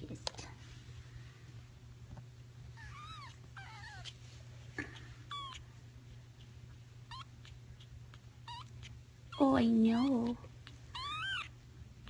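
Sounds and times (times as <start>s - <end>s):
steady low hum: 0.0s - 12.0s
kittens mewing: 2.8s - 4.2s, 4.8s - 5.7s, 7.1s - 11.6s.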